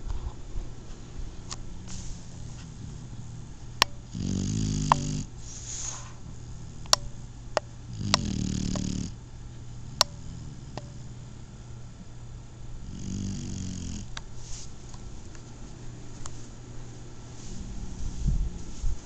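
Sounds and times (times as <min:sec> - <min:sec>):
puppy snoring: 0:01.4 - 0:07.3, 0:07.9 - 0:11.2, 0:12.8 - 0:14.2
breathy exhale: 0:05.4 - 0:06.3.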